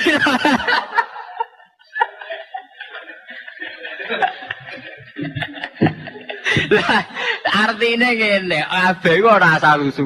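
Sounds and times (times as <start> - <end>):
audience laughing: 0.0 - 7.8.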